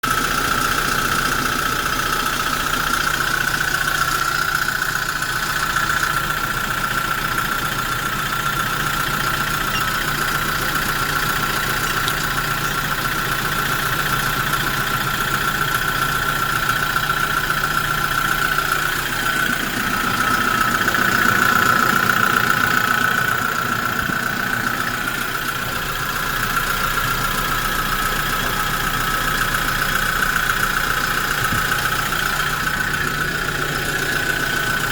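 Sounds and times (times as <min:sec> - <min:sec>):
truck engine idling: 0:00.0 - 0:34.9.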